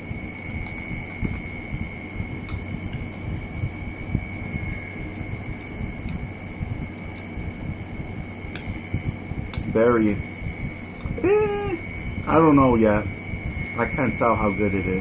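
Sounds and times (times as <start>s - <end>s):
faint high-pitched whine: 0.0s - 15.0s
chewing corn on the cob: 4.6s - 6.2s.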